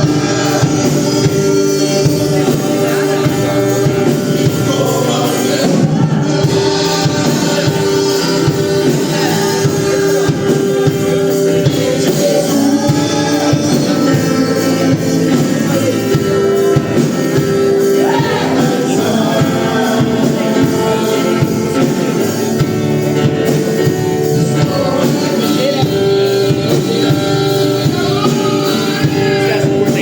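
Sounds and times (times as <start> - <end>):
band playing worship music: 0.0 - 30.0
people singing: 0.0 - 30.0.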